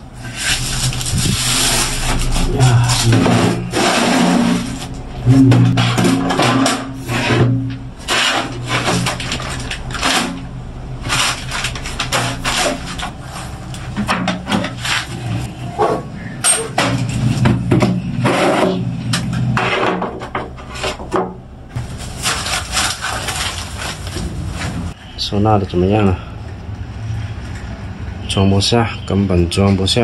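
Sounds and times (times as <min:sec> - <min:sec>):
tools scraping and knocking: 0:00.2 - 0:21.4.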